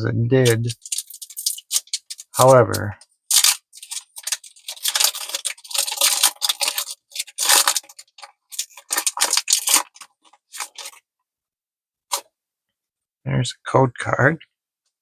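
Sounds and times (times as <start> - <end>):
foil wrapper crinkling: 0.4 - 11.0.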